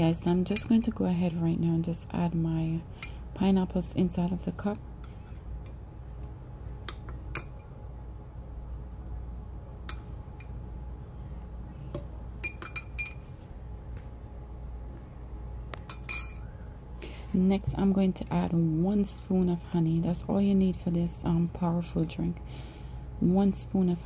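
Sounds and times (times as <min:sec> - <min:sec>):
steady low hum: 0:00.0 - 0:24.0
utensils and dishware clinking: 0:12.4 - 0:13.3, 0:15.9 - 0:16.5.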